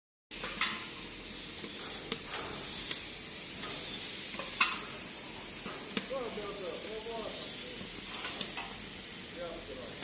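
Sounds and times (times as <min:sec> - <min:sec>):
wood fire hissing and crackling: 0:00.3 - 0:10.0.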